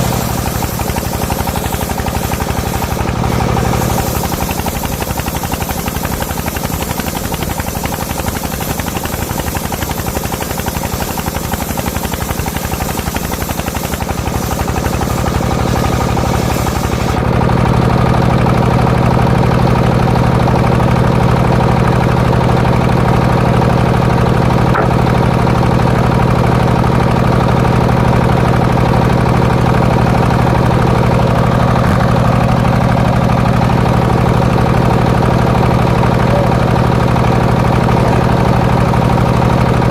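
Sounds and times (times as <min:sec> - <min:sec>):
harsh hiss: 0:00.0 - 0:17.2
sawmill engine knocking: 0:00.0 - 0:39.9.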